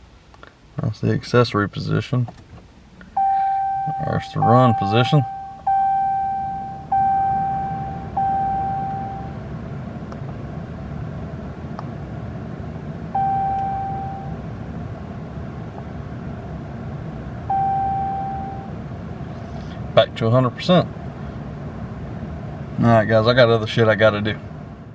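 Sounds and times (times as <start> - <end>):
low background hum: 0.0 - 24.9
instrument cluster chime: 3.2 - 9.3, 13.2 - 14.3.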